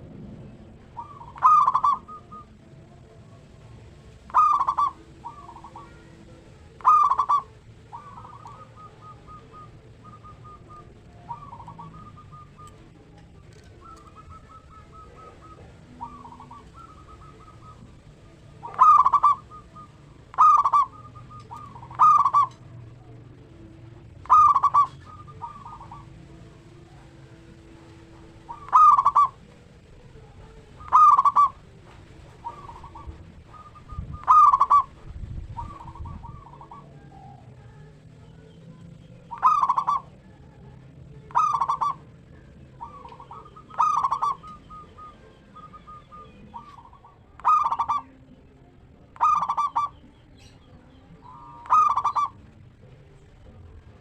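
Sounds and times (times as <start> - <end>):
dove call notes: 0.0 - 54.0
dove cooing runs: 0.7 - 3.0, 3.7 - 38.0, 38.8 - 40.6, 41.2 - 48.2, 48.8 - 50.6, 51.2 - 54.0.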